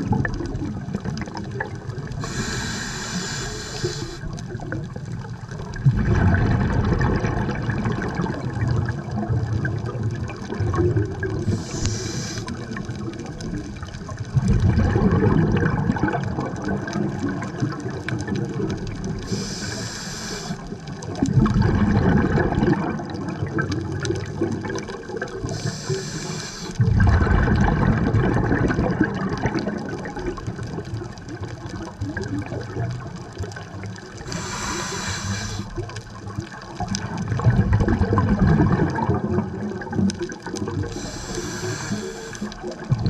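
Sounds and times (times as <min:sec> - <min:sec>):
bubbling rush of exhaled air: 0:00.0 - 0:43.0
hissing inhale through regulator: 0:02.1 - 0:04.4, 0:11.4 - 0:12.9, 0:19.2 - 0:20.8, 0:25.4 - 0:26.8, 0:34.2 - 0:36.0, 0:40.8 - 0:42.8.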